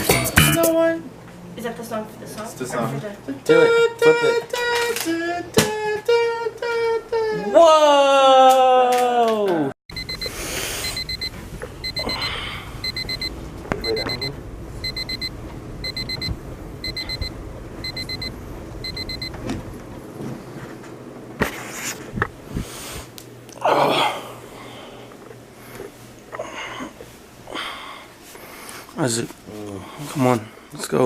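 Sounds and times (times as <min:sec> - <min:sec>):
alarm clock beeping: 0:09.9 - 0:19.4.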